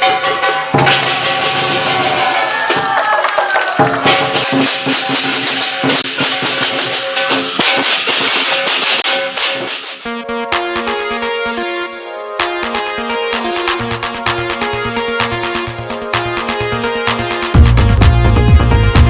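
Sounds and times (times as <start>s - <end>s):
music with drums and shakers: 0.0s - 10.2s, 17.1s - 19.0s.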